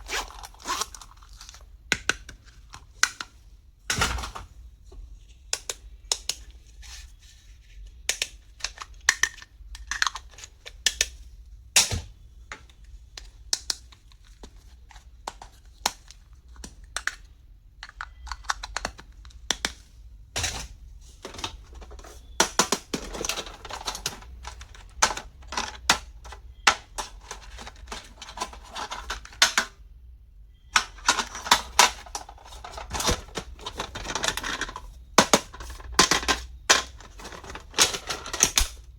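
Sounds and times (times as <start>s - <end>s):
plastic packaging clicks and clatter: 8.1s - 11.2s, 11.8s - 19.8s, 20.4s - 29.8s, 30.7s - 38.9s.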